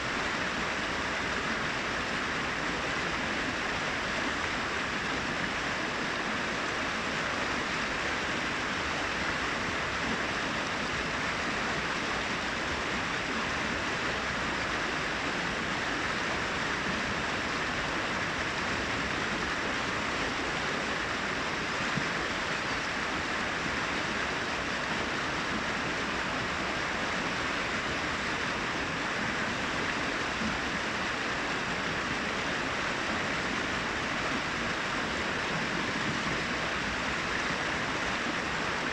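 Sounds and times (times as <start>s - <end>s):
brook water cascading over rocks: 0.0s - 38.9s.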